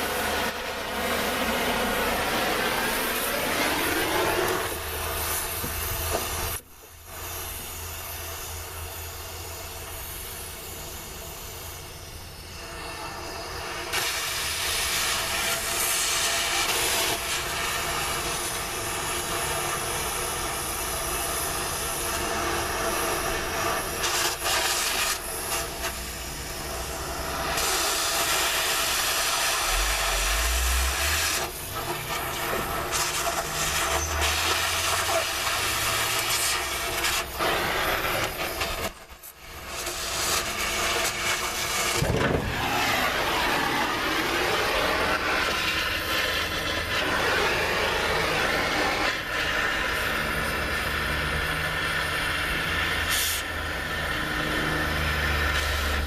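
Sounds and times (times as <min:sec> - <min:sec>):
oxy torch hissing: 0:00.0 - 0:56.0
steady low hum: 0:29.4 - 0:33.4.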